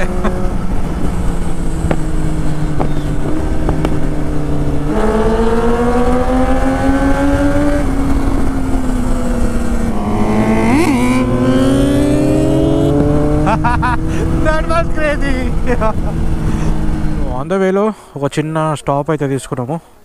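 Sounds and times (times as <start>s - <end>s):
exhaust crackles: 0.0s - 17.5s
motorcycle engines accelerating: 0.0s - 17.5s.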